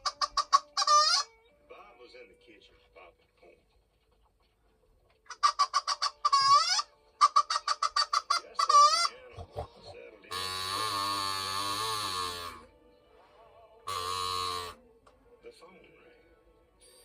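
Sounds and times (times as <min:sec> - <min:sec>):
hen clucking and squawking: 0:00.0 - 0:01.4, 0:05.3 - 0:12.7, 0:13.9 - 0:14.8.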